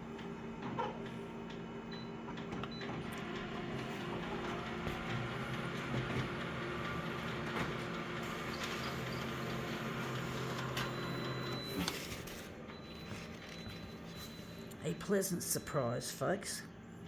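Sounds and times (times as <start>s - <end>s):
photocopier humming and whirring: 0.0s - 17.0s.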